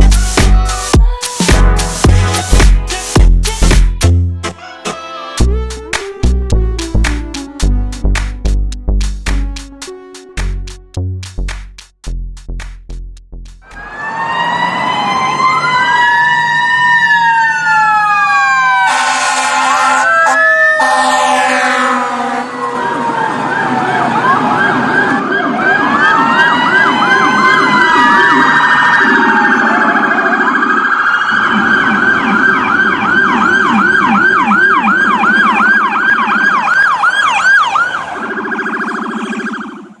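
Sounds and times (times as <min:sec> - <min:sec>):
electronic siren wailing: 0:13.6 - 0:40.0.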